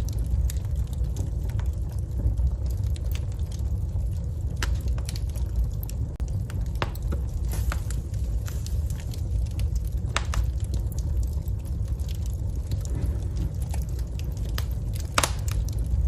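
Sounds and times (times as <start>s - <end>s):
low rumble of burning: 0.0s - 16.0s
wood fire crackling and popping: 0.0s - 16.0s.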